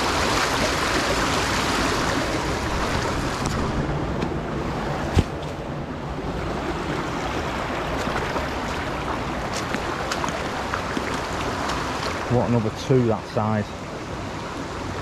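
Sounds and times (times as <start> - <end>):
wind buffeting microphone: 0.0 - 10.6
stream water rushing: 0.0 - 15.0.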